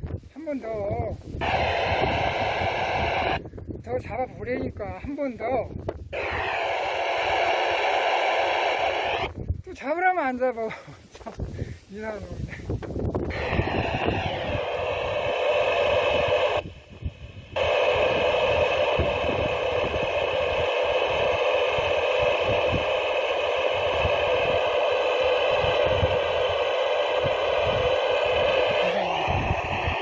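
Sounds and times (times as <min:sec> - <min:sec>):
radio hiss: 0:00.3 - 0:03.4, 0:06.1 - 0:09.4, 0:10.7 - 0:30.0
radio carrier held tones: 0:01.4 - 0:03.4, 0:06.2 - 0:09.3, 0:13.3 - 0:16.6.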